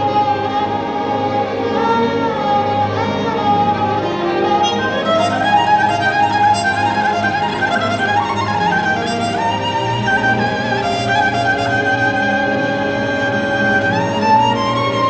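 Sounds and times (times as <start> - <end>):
bowed string melody: 0.0 - 15.0.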